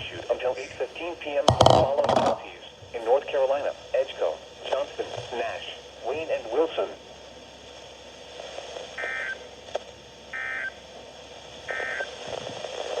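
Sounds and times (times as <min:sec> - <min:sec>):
radio hiss: 0:00.0 - 0:13.0
warbling data tones: 0:09.0 - 0:09.5, 0:10.3 - 0:10.8, 0:11.6 - 0:12.2.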